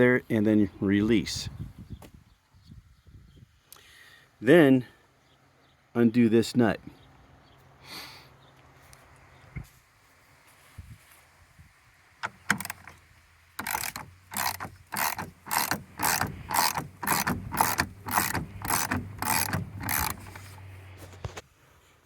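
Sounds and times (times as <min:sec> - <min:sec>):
ratchet wrench clicking: 0:12.2 - 0:13.0, 0:13.6 - 0:20.7.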